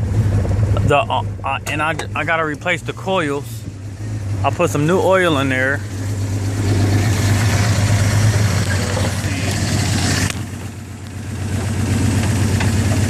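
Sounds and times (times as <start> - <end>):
car engine idling roughly: 0.0 - 13.0.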